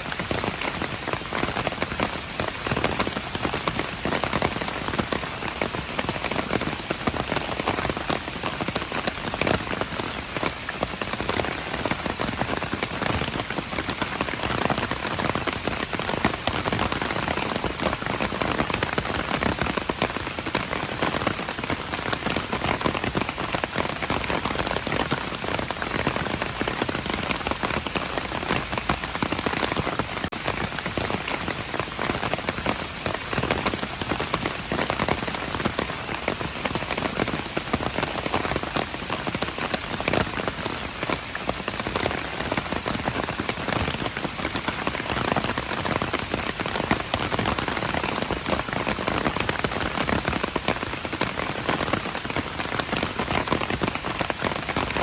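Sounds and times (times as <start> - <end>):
rain pattering on hard surfaces: 0.0 - 55.0.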